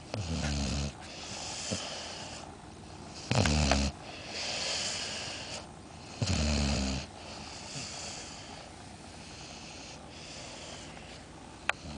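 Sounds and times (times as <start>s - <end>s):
loud rasping snore: 0.1s - 1.0s, 3.3s - 4.0s, 6.2s - 7.1s
hissing breaths: 1.0s - 6.2s, 7.0s - 11.9s.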